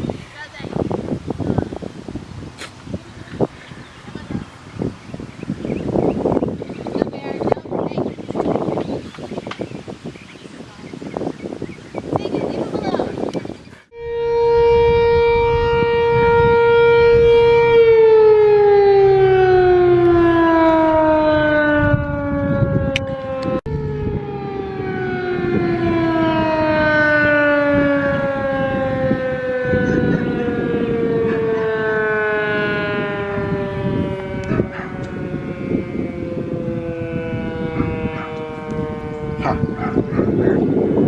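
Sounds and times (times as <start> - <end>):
outdoor warning siren: 3.4 - 8.7, 11.2 - 41.0.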